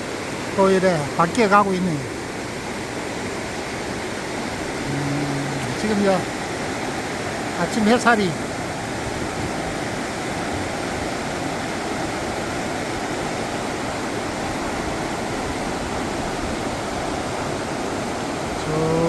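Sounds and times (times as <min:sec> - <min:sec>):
river rushing: 0:00.0 - 0:19.0.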